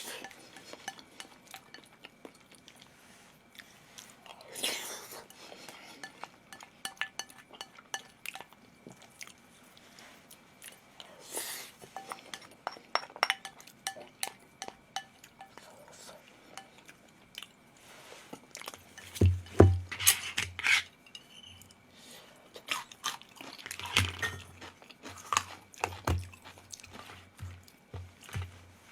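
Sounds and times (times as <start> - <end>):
utensils clinking against bowl: 0.0 - 2.0, 5.2 - 8.6, 11.8 - 15.7, 18.9 - 21.8, 23.4 - 27.1
person chewing: 22.6 - 28.6.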